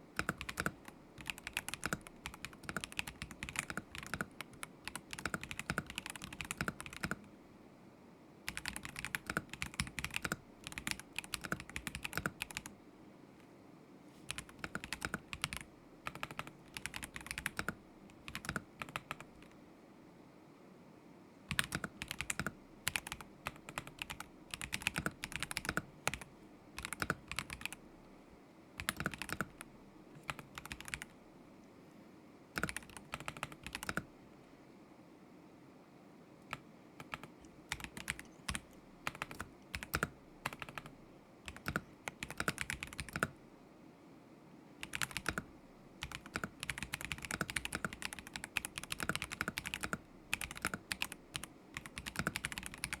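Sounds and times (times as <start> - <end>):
typing on mechanical keyboard: 0.2 - 7.2, 8.5 - 12.7, 14.3 - 19.6, 21.5 - 27.8, 28.8 - 31.1, 32.6 - 34.1, 36.5 - 43.4, 44.8 - 53.0.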